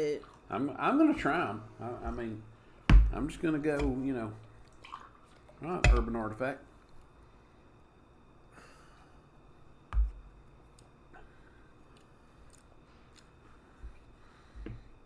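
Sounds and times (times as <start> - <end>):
heavy thump on a table: 2.9 - 3.2.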